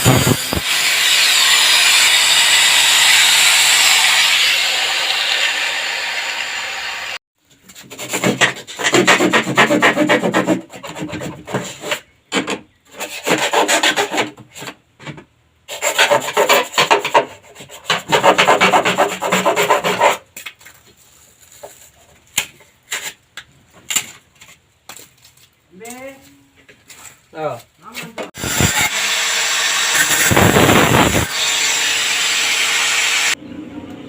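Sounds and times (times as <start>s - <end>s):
hand tool rasping on board: 7.9s - 12.0s, 12.9s - 14.4s, 15.7s - 20.3s.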